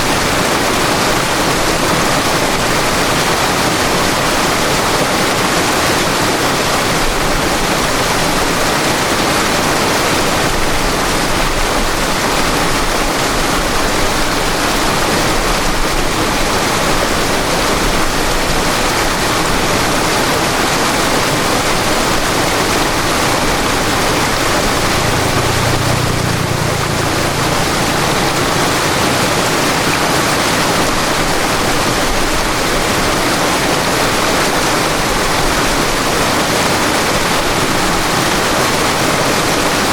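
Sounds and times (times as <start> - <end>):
river water rushing and splashing: 0.0 - 39.9
low rumble: 22.8 - 29.7.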